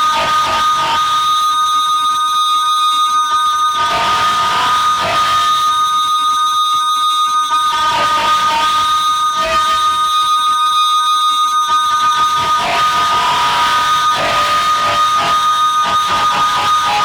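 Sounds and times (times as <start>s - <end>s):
noisy crackling and squeals: 3.5s - 10.5s, 11.5s - 17.0s.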